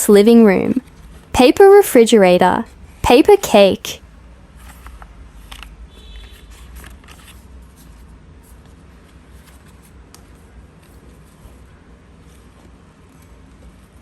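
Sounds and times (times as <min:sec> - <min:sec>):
paper rustling and clicking: 0:04.6 - 0:14.0.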